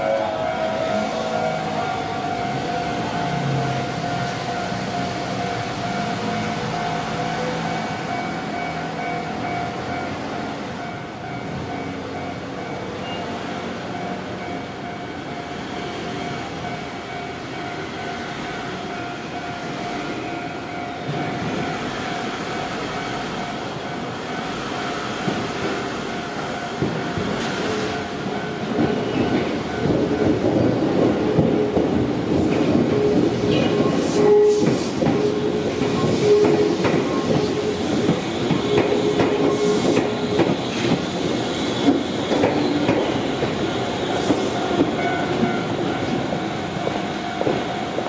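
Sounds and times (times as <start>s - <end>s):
rail rumble: 0.0s - 12.8s, 13.9s - 48.0s
electric train whine: 0.0s - 48.0s
train wheel clatter: 18.0s - 48.0s.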